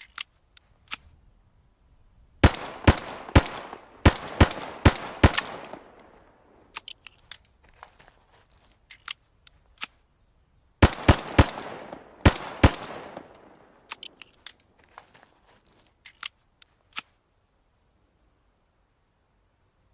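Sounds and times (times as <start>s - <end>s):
pistol shots with echo: 2.4s - 6.2s, 10.8s - 13.8s.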